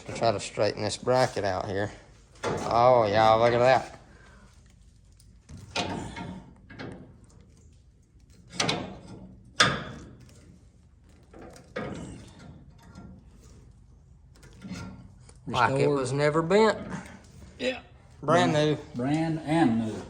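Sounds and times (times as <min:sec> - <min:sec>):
metal knocks and clanks: 0:02.4 - 0:03.9, 0:05.4 - 0:07.4, 0:08.3 - 0:13.8.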